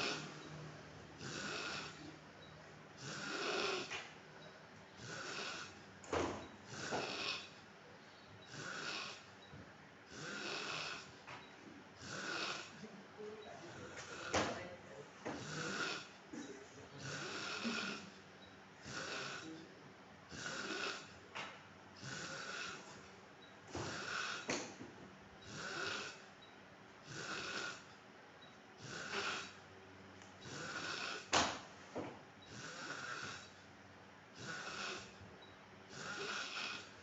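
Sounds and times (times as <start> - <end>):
man snoring: 0.0 - 0.5, 1.2 - 2.2, 3.0 - 4.0, 5.0 - 7.6, 8.5 - 9.3, 10.1 - 11.2, 12.0 - 12.8, 13.7 - 14.6, 15.2 - 16.2, 16.9 - 18.2, 18.8 - 19.6, 20.3 - 21.2, 22.0 - 23.0, 23.7 - 24.6, 25.4 - 26.3, 27.0 - 27.9, 28.8 - 29.6, 30.4 - 31.6, 32.5 - 33.6, 34.3 - 35.2, 35.9 - 37.0.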